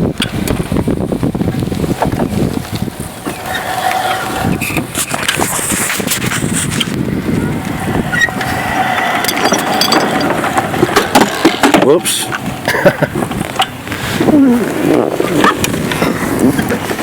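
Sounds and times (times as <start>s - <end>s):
lawn mower rattling rumble: 0.0s - 17.0s
thin electric motor whine: 6.9s - 11.1s.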